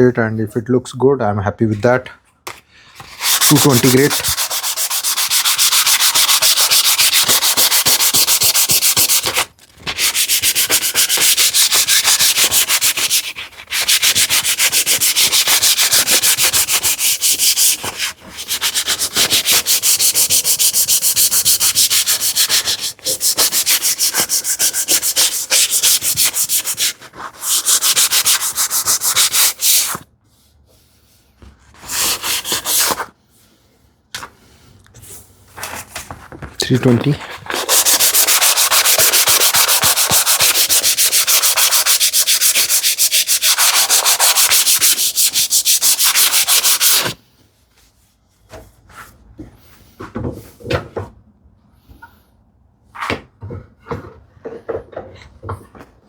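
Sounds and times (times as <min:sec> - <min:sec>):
sandpaper sanding wood: 0:03.0 - 0:30.0, 0:31.8 - 0:33.1, 0:37.4 - 0:47.2.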